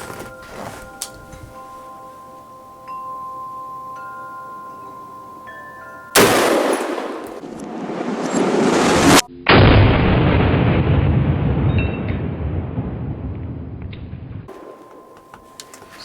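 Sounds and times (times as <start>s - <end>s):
wind chimes ringing: 0.0s - 7.4s, 14.5s - 16.0s
loud gunfire: 6.2s - 8.1s, 14.5s - 15.4s.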